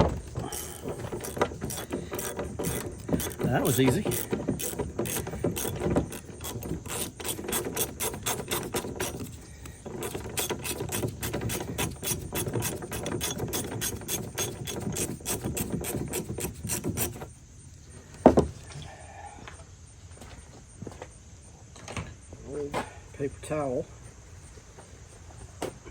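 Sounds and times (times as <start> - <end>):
socket ratchet clicking: 0.5 - 17.2.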